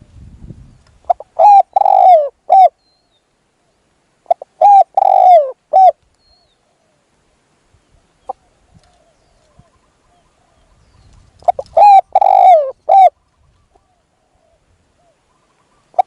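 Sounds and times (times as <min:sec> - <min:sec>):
dove cooing: 0:01.1 - 0:02.8, 0:04.3 - 0:06.0, 0:11.4 - 0:16.0.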